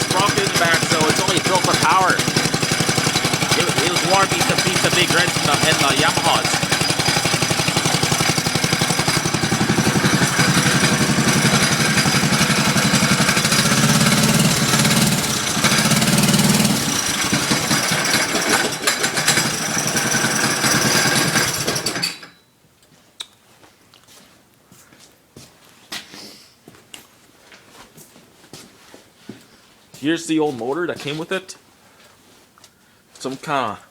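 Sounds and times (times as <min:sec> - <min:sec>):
small engine running: 0:00.0 - 0:22.3.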